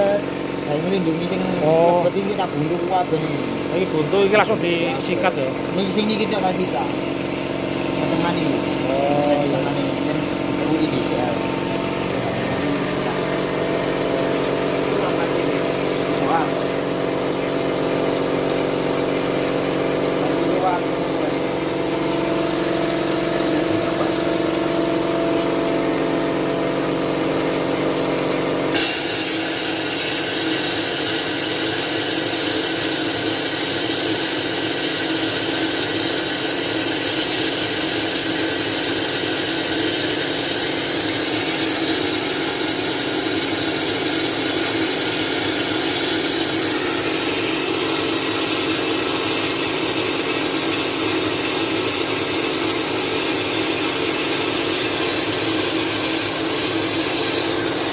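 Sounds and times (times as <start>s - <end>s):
machine hum: 0.0s - 57.9s
loud blasting hiss: 28.7s - 31.6s.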